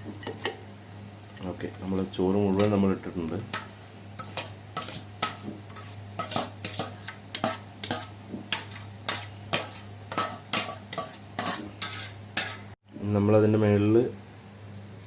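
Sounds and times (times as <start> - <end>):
metal spoon scraping a pot: 3.4 - 12.8.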